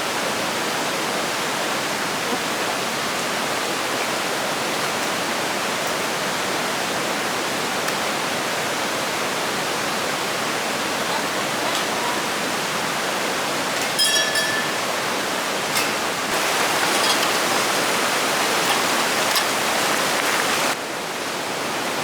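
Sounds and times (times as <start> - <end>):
running water: 0.0 - 22.0
high-pitched ringing tone: 14.0 - 15.1.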